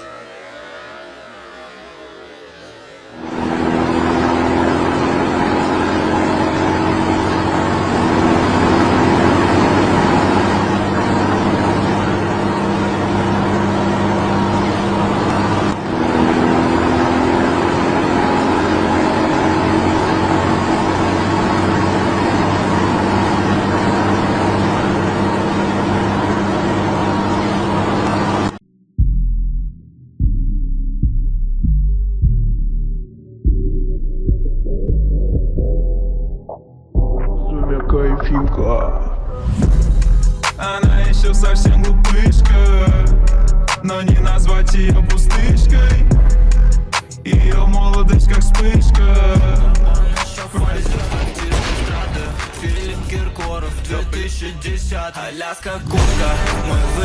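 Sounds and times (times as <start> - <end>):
vehicle engine running: 3.1 - 28.6, 39.3 - 55.1, 55.7 - 57.0.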